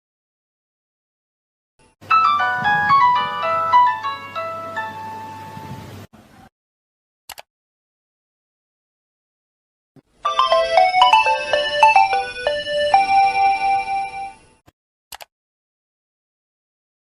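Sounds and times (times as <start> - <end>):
mobile phone ringtone: 2.1 - 5.6, 10.2 - 14.5.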